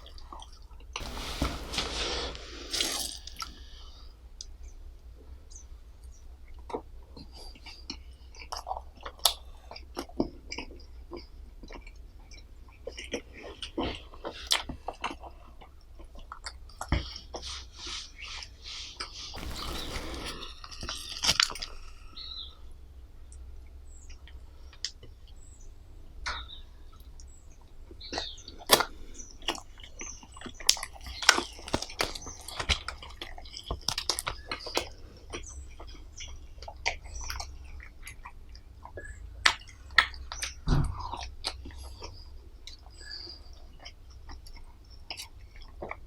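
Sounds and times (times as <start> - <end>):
chewing: 28.0 - 46.0.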